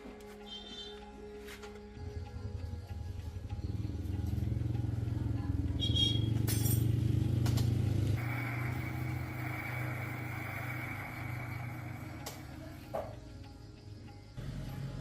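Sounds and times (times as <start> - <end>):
electric motor humming and whining: 7.4 - 12.8.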